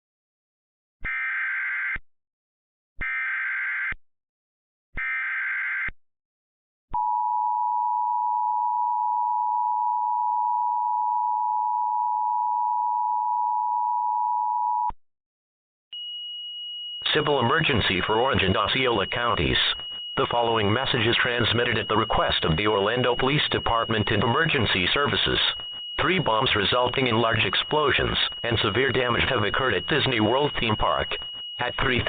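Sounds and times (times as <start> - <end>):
faint steady high tone: 16.0 - 32.0
two-tone attention signal: 17.0 - 32.0
warbling digital data screech: 17.1 - 32.0.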